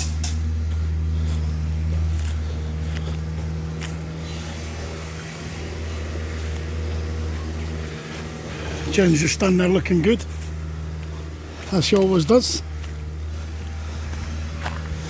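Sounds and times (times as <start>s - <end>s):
excavator diesel engine humming: 0.0s - 15.0s.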